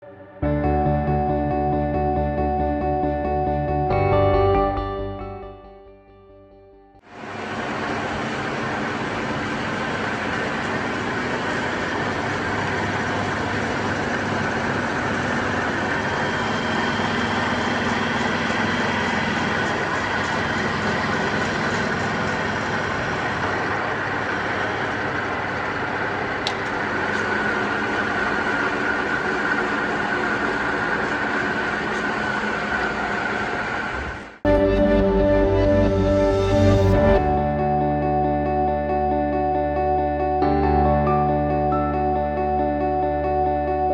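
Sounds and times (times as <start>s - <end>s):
grinder machine whining: 7.1s - 38.2s.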